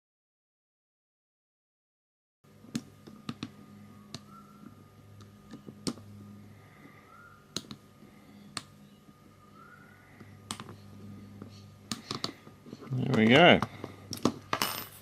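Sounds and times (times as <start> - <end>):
low steady hum: 2.5 - 15.0
plastic parts clicking and tapping: 11.9 - 14.6.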